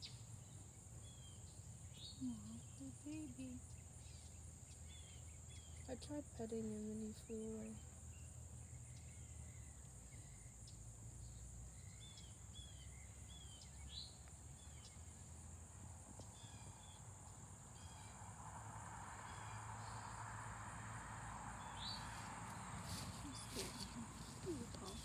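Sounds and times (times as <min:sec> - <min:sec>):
insects droning: 0:00.0 - 0:25.0
soft rushing hiss: 0:07.3 - 0:25.0
bird chirps: 0:21.6 - 0:25.0.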